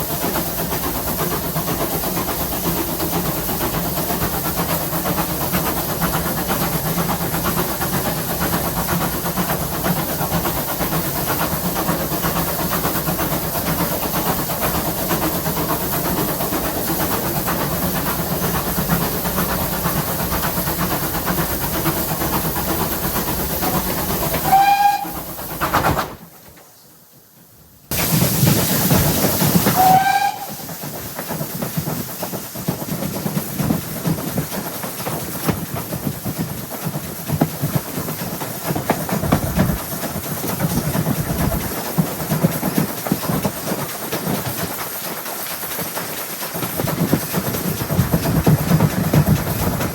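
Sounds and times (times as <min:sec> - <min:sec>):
steam locomotive rumble and hiss: 0:00.0 - 0:49.9
steam whistle blasts: 0:24.5 - 0:25.2, 0:29.7 - 0:30.6.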